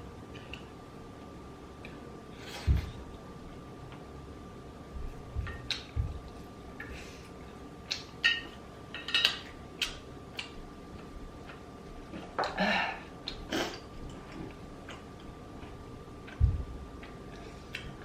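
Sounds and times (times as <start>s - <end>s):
faint high hum: 0.0s - 18.0s.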